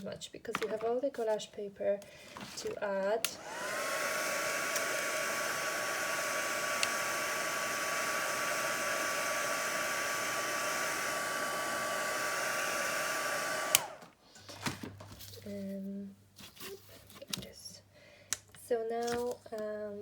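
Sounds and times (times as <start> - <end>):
hot-air blower whine: 3.2 - 14.2.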